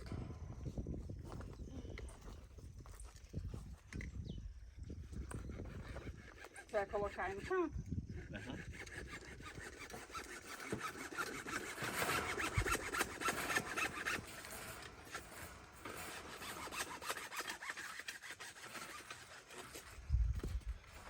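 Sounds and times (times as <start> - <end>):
hand tool scraping wet mortar: 8.4 - 20.0.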